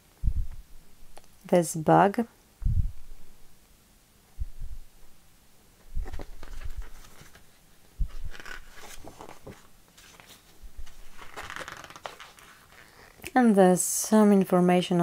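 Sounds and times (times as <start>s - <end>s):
paper pages turning: 6.0s - 13.2s.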